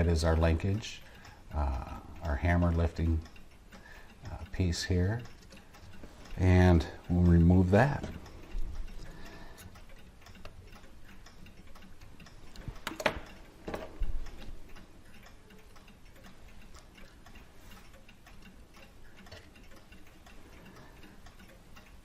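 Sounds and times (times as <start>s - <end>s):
clock ticking: 0.0s - 22.0s
sharp metallic clicks: 0.0s - 22.0s.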